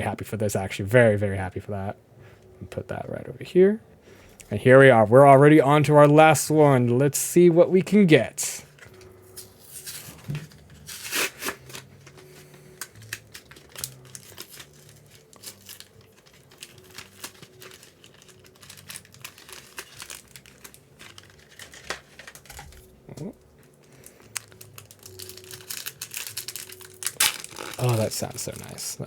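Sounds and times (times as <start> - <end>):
foil wrapper tearing and crinkling: 8.7 - 29.0.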